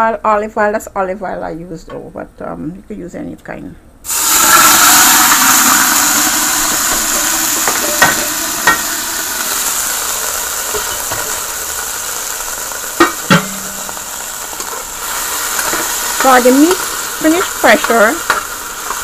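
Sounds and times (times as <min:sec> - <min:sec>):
meat sizzling in hot oil: 0:04.0 - 0:19.0
knocks against a pan: 0:07.6 - 0:08.9, 0:13.0 - 0:13.8.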